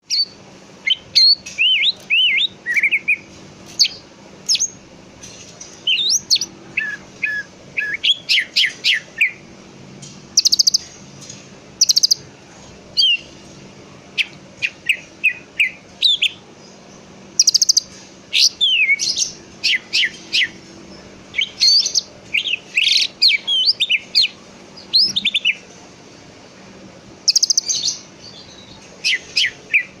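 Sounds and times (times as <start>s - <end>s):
bird singing whistled phrases: 0.0s - 4.7s, 5.9s - 9.4s, 13.0s - 13.3s, 17.4s - 20.6s, 21.4s - 25.6s, 27.3s - 30.0s.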